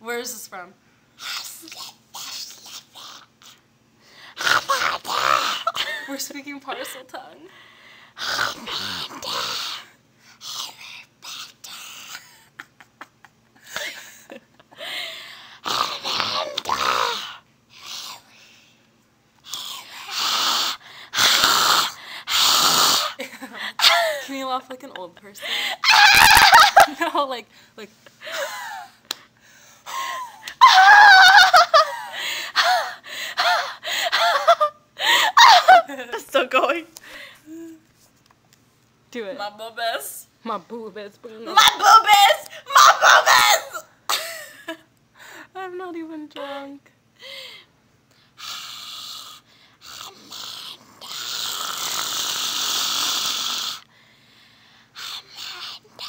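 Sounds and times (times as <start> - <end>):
person hissing through teeth: 4.4 - 5.8, 8.2 - 12.2, 15.6 - 18.3, 19.4 - 23.2, 48.4 - 53.9, 55.0 - 56.0.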